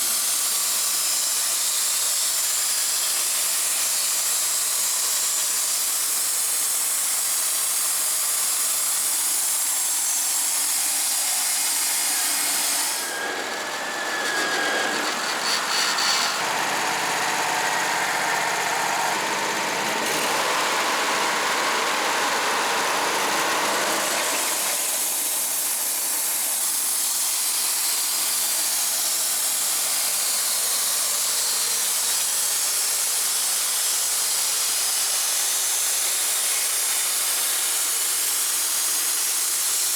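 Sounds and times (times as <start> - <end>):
band saw cutting log: 0.0 - 39.9.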